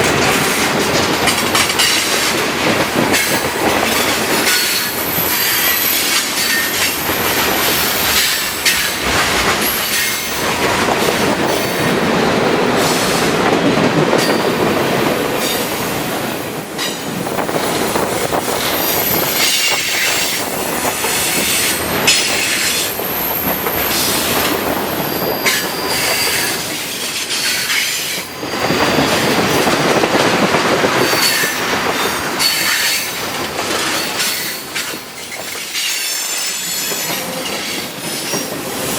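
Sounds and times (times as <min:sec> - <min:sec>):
train wheels rumbling and clattering: 0:00.0 - 0:38.9
high wheel squeal: 0:04.5 - 0:08.9, 0:21.2 - 0:28.6.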